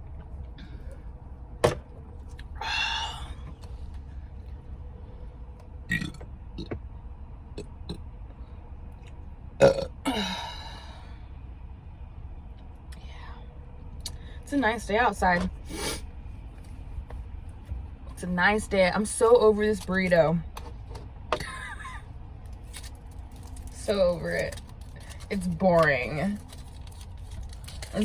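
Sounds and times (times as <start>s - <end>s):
steady low rumble: 0.0s - 28.0s
woman burping: 9.6s - 10.8s.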